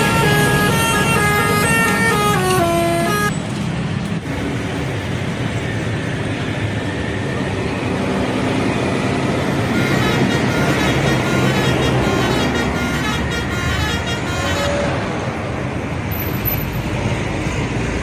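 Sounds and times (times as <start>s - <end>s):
musical bus horn melody: 0.0s - 3.3s, 9.6s - 15.2s
bus engine running: 0.0s - 18.0s
road noise: 0.0s - 18.0s.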